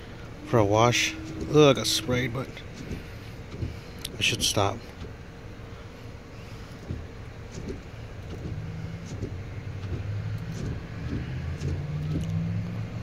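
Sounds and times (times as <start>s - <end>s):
car engine idling: 0.0s - 13.0s
faint clicks and knocks: 6.8s - 12.4s.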